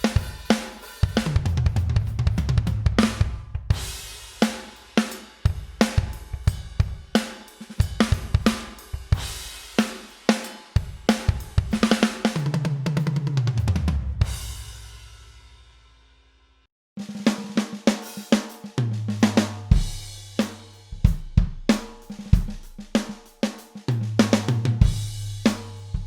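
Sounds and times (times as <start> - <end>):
tom drum fill: 0.0 - 4.5, 18.8 - 23.1, 23.9 - 26.0
drum kit groove: 0.0 - 16.0, 17.0 - 26.0.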